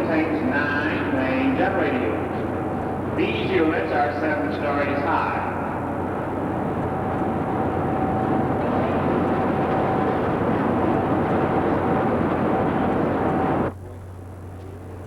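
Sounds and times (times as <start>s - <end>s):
generators running loudly: 0.0s - 15.0s
hall noise: 0.0s - 15.0s.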